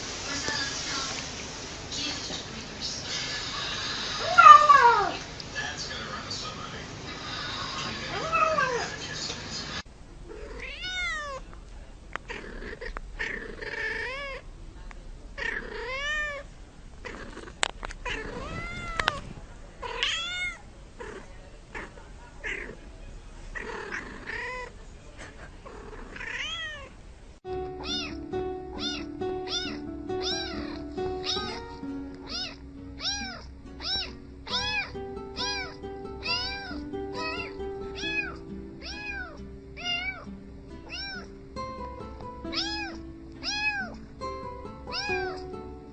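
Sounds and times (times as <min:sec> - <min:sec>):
cat meowing: 0:04.2 - 0:05.2, 0:08.1 - 0:08.9, 0:10.3 - 0:11.4, 0:12.3 - 0:14.4, 0:15.4 - 0:17.2, 0:18.0 - 0:19.2, 0:19.8 - 0:21.2, 0:26.1 - 0:26.9, 0:27.8 - 0:28.2, 0:28.8 - 0:41.3, 0:42.5 - 0:44.0, 0:44.9 - 0:45.4
tune made of cat meows: 0:27.7 - 0:40.3, 0:40.9 - 0:41.3, 0:42.5 - 0:44.0, 0:44.9 - 0:45.5.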